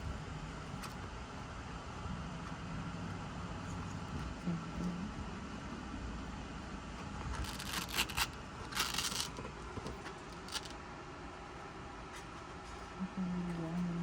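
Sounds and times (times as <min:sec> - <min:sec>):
steady low hum: 0:00.0 - 0:14.0
scraping and rustling of wiring: 0:07.0 - 0:10.8.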